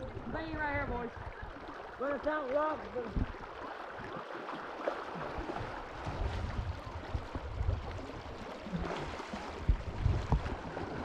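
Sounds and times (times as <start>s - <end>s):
river water sloshing around wading: 0.0s - 11.0s.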